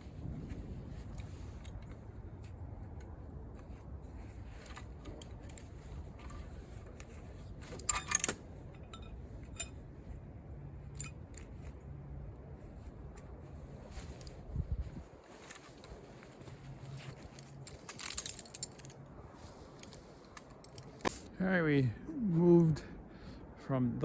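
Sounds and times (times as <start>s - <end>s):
winch and chain rattling: 4.7s - 9.8s, 10.9s - 11.5s, 16.8s - 19.0s, 19.7s - 21.2s.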